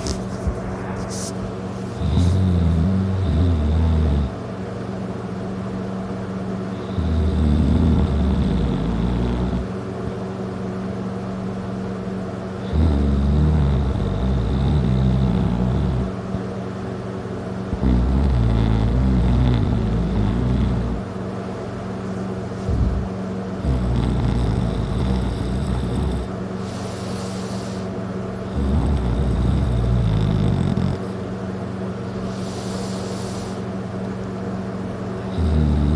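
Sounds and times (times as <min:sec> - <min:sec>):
quiet breathing: 0:00.0 - 0:04.4, 0:23.7 - 0:31.1, 0:32.1 - 0:33.8
loud rumbling snoring: 0:00.0 - 0:04.5, 0:06.6 - 0:09.8, 0:12.6 - 0:16.4, 0:17.6 - 0:21.1, 0:22.6 - 0:31.2, 0:32.2 - 0:33.7, 0:35.2 - 0:35.9.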